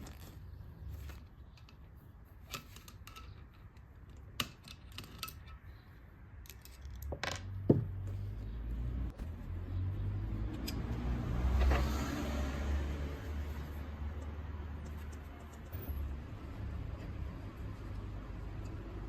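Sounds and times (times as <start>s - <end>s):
metal parts and tools clinking: 1.0s - 5.8s.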